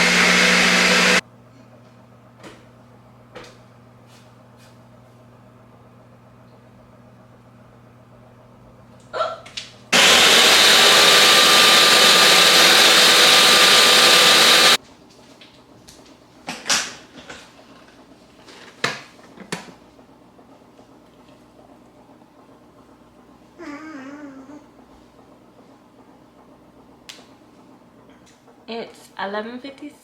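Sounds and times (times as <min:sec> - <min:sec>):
small electric motor running: 0:10.0 - 0:14.8.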